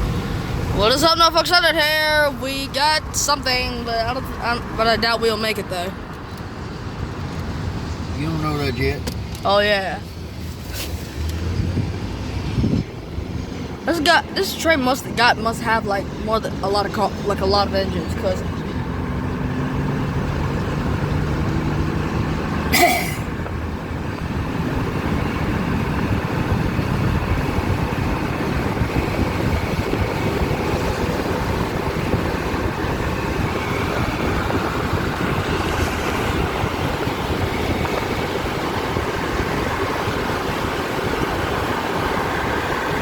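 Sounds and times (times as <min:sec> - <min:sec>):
car road and engine noise: 0:00.0 - 0:43.0.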